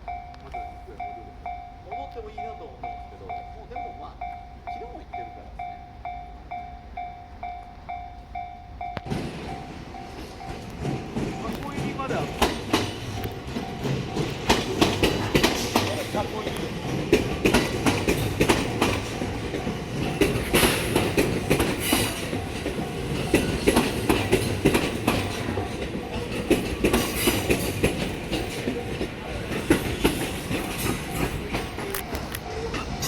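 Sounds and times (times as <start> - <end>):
train wheels clacking over rails: 9.0 - 33.0.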